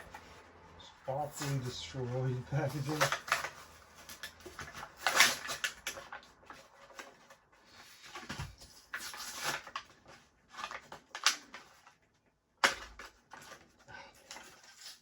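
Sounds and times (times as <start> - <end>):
plastic packaging crackling and tearing: 0.0 - 15.0
sharp plastic crack: 2.6 - 7.4, 8.0 - 12.0, 12.6 - 13.6.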